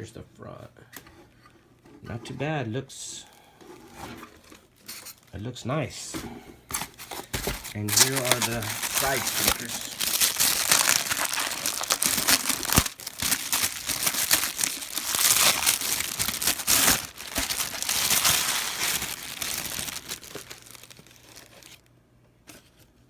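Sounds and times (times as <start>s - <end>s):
plastic packaging crinkling: 6.7s - 21.9s.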